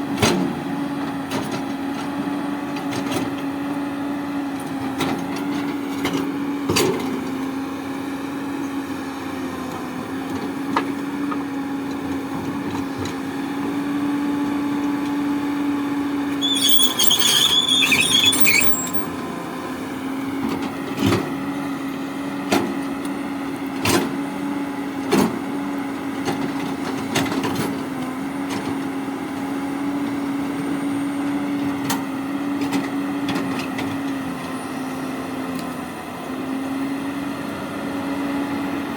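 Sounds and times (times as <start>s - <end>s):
excavator diesel engine running: 0.0s - 38.9s
brief high squeal: 16.3s - 19.1s.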